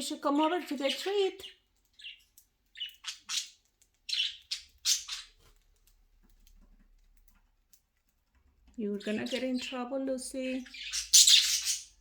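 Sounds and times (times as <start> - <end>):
budgerigars calling: 2.8 - 5.4, 10.7 - 12.0.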